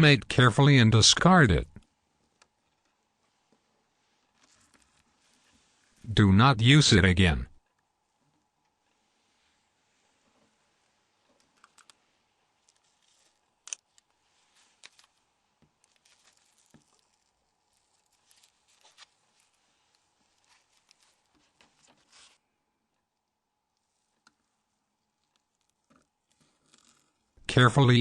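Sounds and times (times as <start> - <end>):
small parts clicking and scratching: 4.2 - 5.6, 11.3 - 22.4, 25.0 - 27.3.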